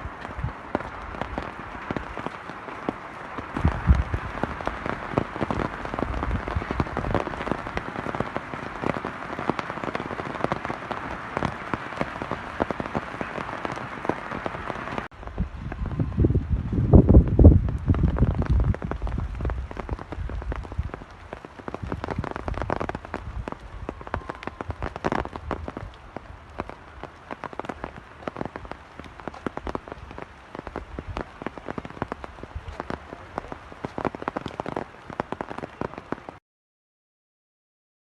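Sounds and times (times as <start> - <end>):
heavy rain pattering: 0.0 - 36.4.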